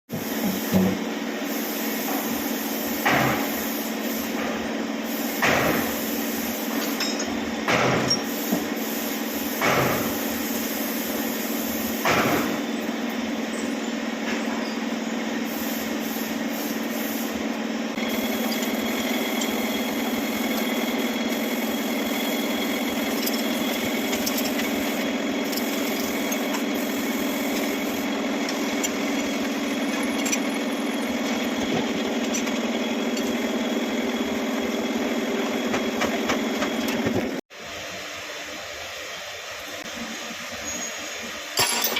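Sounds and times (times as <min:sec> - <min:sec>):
machine humming: 0:10.8 - 0:37.4.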